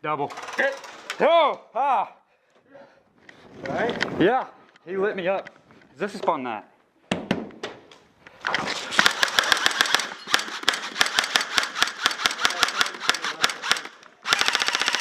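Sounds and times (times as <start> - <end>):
airsoft guns firing: 8.5 - 15.0.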